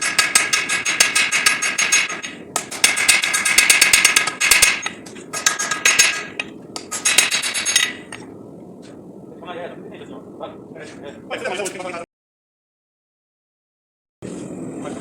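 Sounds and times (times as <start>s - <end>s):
hammer striking steel on anvil: 0.0s - 8.2s.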